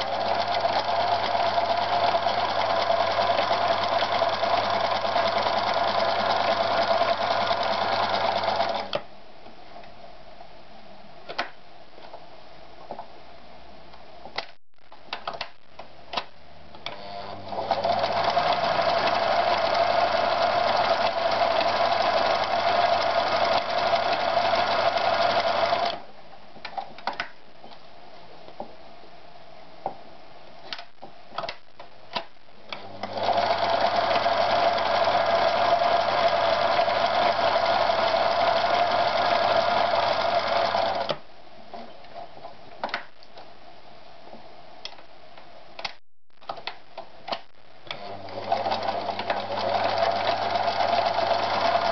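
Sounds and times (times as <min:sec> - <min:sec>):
sewing machine stitching: 0:00.0 - 0:09.0, 0:16.9 - 0:26.0, 0:32.7 - 0:41.2, 0:47.9 - 0:51.9
clicks: 0:44.8 - 0:48.0.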